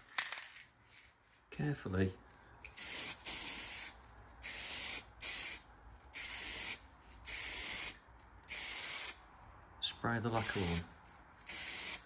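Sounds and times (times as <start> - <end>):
aerosol can spraying: 2.7 - 9.2, 10.4 - 12.0.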